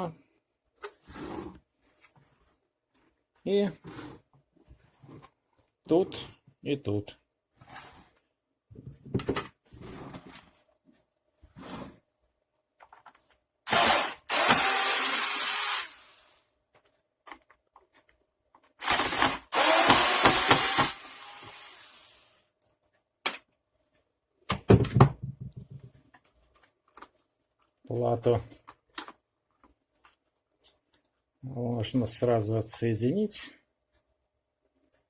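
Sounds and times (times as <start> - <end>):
electric screwdriver running: 13.7 - 16.4, 18.8 - 22.3.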